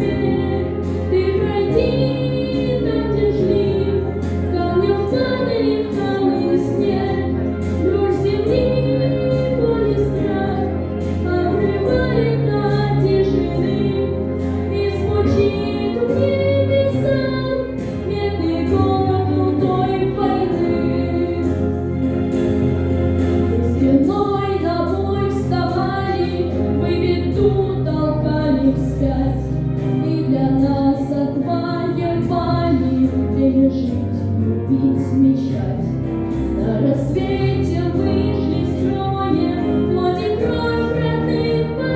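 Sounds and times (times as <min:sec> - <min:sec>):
song with instrumental accompaniment: 0:00.0 - 0:41.9.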